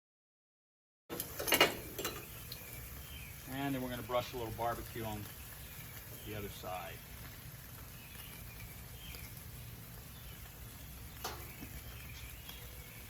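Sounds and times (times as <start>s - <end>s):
faint outdoor ambience: 1.1s - 13.0s
high bird chirps: 1.7s - 4.4s, 5.0s - 7.2s, 7.8s - 13.0s.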